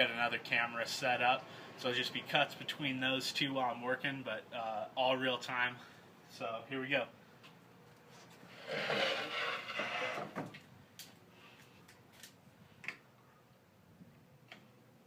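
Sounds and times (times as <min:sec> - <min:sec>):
plywood scraping across surface: 0:08.4 - 0:10.5.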